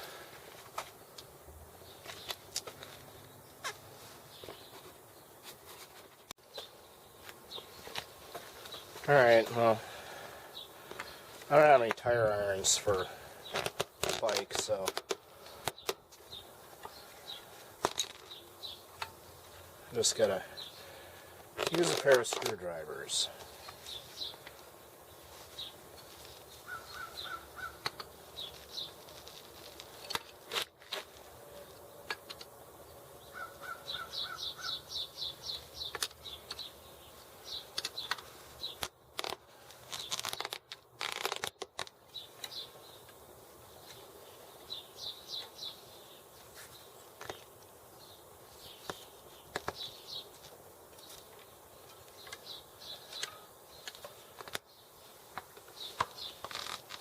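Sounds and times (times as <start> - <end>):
birds chirping: 0.0 - 30.1, 31.3 - 39.0, 42.1 - 57.0.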